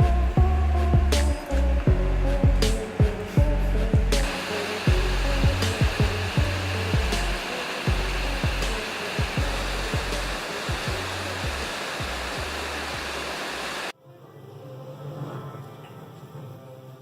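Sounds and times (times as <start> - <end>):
low sliding music notes: 0.0 - 13.1
heavy rain and hail: 4.3 - 13.9.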